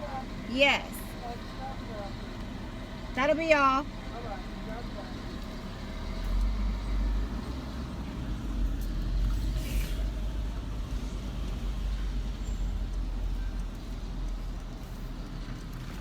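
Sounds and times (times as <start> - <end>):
car engine idling: 0.0 - 16.0
brief hiss: 9.4 - 10.2.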